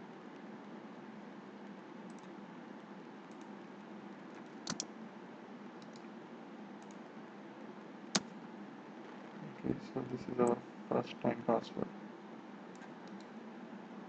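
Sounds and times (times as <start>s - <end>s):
computer keys clicking: 2.1s - 2.4s, 3.3s - 3.6s, 4.6s - 4.9s, 5.8s - 6.1s, 6.8s - 7.0s, 12.7s - 13.3s.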